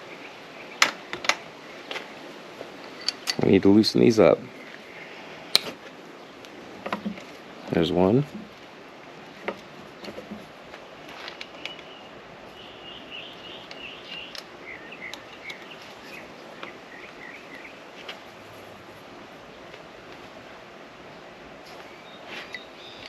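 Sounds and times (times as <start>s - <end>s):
background hiss: 0.0s - 23.0s
hand tools clicking on bolts: 2.8s - 3.5s
bird chirping: 11.4s - 17.9s, 21.1s - 23.0s.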